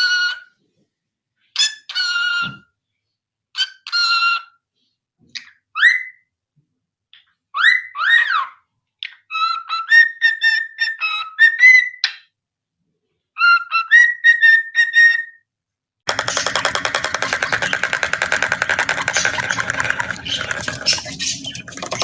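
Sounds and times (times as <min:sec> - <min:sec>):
loud buzzing rattle: 0:16.1 - 0:21.4.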